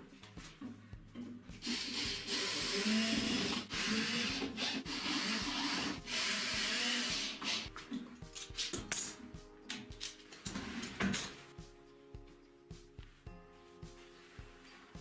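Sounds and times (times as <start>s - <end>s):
wood being sanded by hand: 1.6s - 7.7s.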